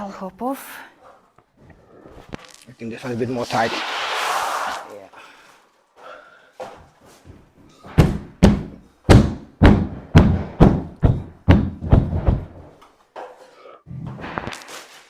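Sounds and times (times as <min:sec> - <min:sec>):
dull thumps on wall panel: 0:07.9 - 0:12.7.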